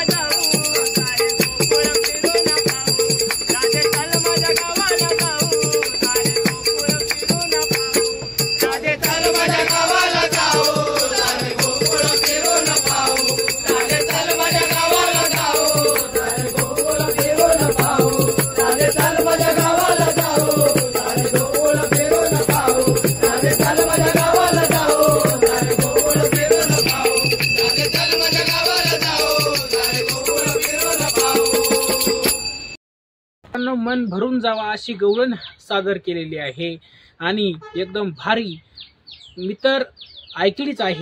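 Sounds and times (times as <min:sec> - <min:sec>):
folk song percussion beat: 0:00.0 - 0:32.7.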